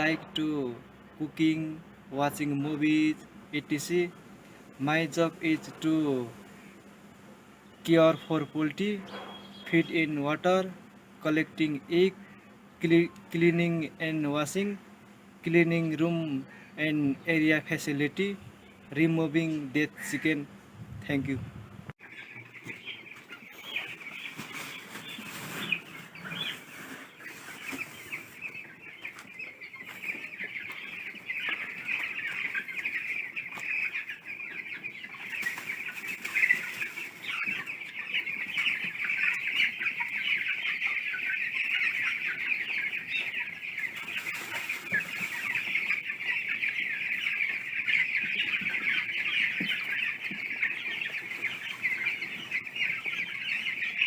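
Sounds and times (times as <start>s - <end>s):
chickens clucking: 0.0s - 54.0s.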